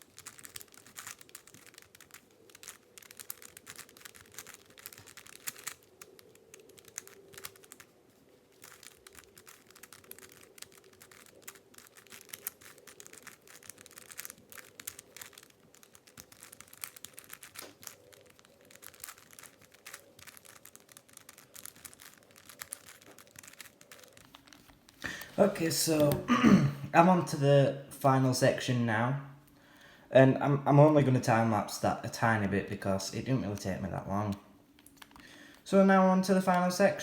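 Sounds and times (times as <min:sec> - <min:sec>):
twisty puzzle clicking and clattering: 0:00.0 - 0:25.3.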